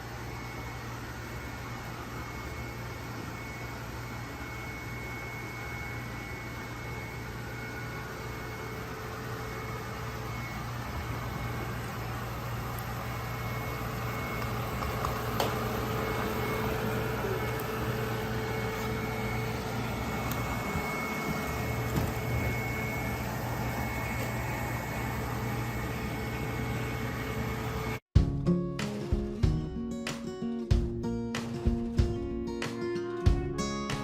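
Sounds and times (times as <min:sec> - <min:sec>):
robot vacuum cleaner whirring: 0:00.0 - 0:28.0
strummed acoustic guitar music: 0:28.2 - 0:34.0.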